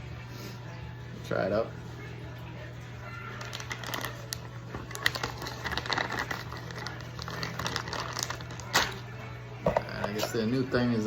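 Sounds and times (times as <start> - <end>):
plastic packaging crinkling: 3.3 - 9.1.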